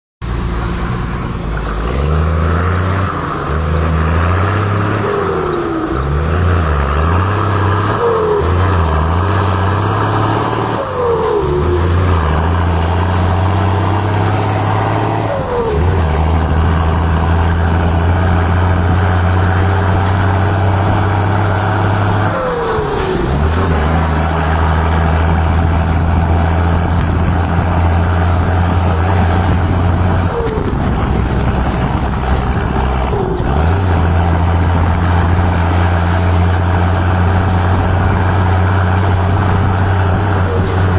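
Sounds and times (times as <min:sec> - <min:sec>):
engine deep drone: 0:00.2 - 0:40.9.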